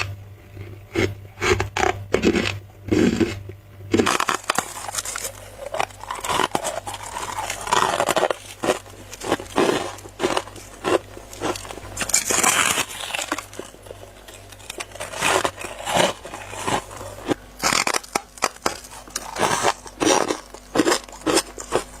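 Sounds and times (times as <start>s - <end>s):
person chewing crunchy ice: 0.0s - 22.0s.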